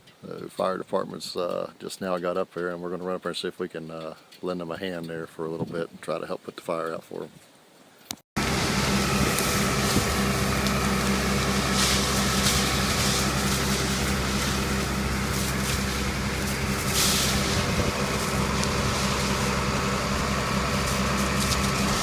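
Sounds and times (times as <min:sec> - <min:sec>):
road noise: 0:08.4 - 0:22.0
vehicle engine running: 0:08.4 - 0:22.0.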